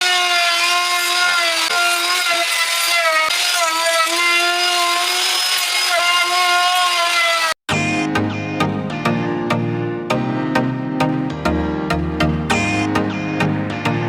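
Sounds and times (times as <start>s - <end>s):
power tool cutting wood: 0.0s - 7.8s.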